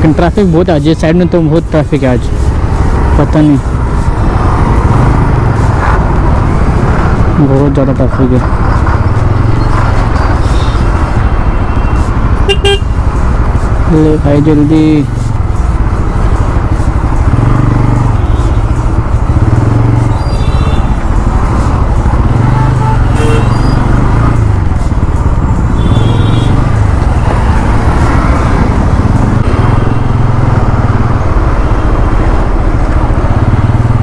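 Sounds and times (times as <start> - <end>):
motorcycle engine running: 0.0 - 34.0
vehicle horn toots: 11.5 - 13.0, 22.4 - 24.0, 25.8 - 26.7.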